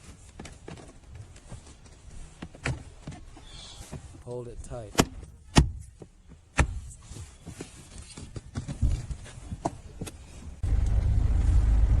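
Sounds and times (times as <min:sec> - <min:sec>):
loud low rumble: 0:10.6 - 0:12.0.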